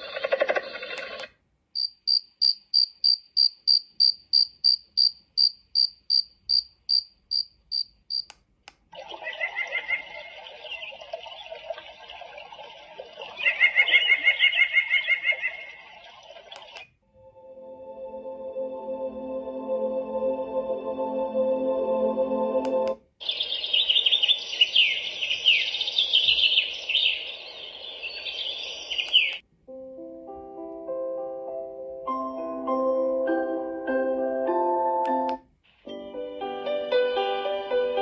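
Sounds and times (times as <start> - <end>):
cricket chirping: 1.8 - 8.3
night chorus of frogs and insects: 1.8 - 8.3, 23.2 - 29.3.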